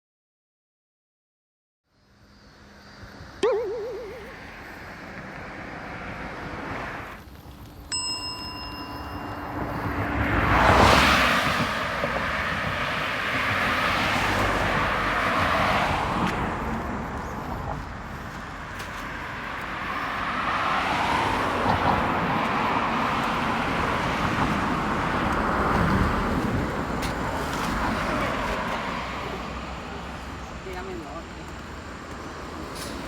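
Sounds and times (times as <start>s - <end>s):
road vehicles passing: 3.5s - 33.0s.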